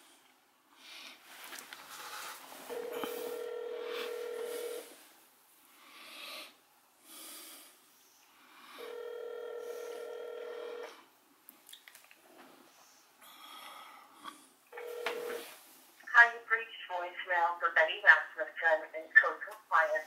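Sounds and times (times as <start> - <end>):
telephone ringback tone: 2.7 - 4.9, 8.8 - 10.9, 14.8 - 15.5.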